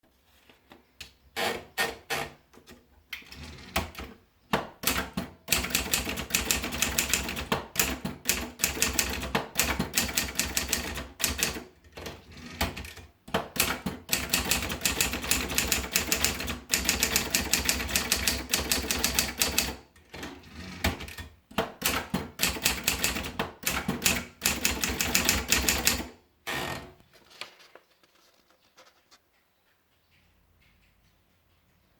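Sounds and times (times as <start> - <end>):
typewriter keystroke clacks: 4.8 - 26.1.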